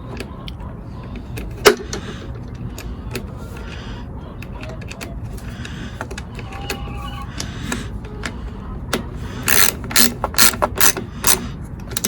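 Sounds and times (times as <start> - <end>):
ratchet wrench clicking: 9.4 - 12.0.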